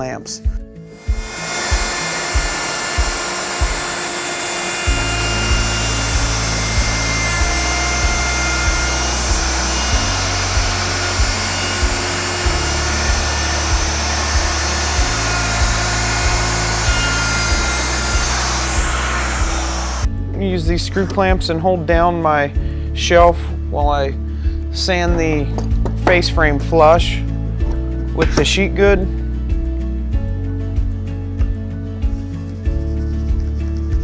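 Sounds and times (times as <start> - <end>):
background music with beat: 0.0 - 4.0, 4.8 - 34.0
power woodworking tool running: 1.0 - 20.1.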